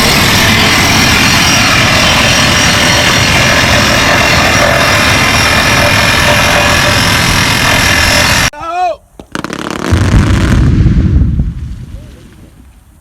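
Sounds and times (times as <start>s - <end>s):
drill rig engine running: 0.0s - 8.5s.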